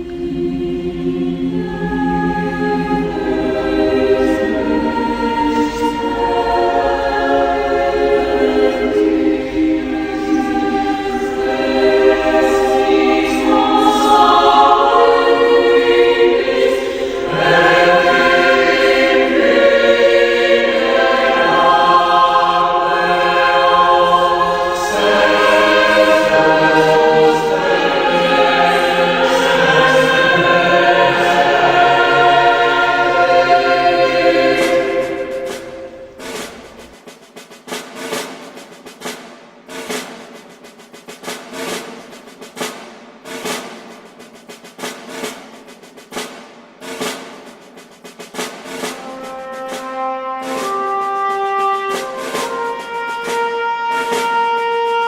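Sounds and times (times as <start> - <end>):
choir singing held chords: 0.0 - 37.1, 48.7 - 55.0.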